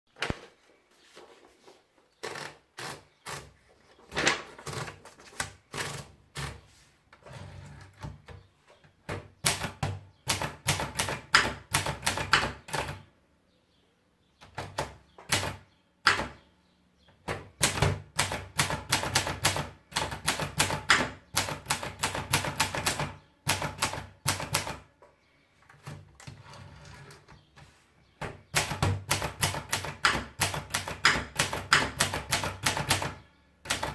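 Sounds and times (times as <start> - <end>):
typewriter keystroke clacks: 28.5 - 33.9.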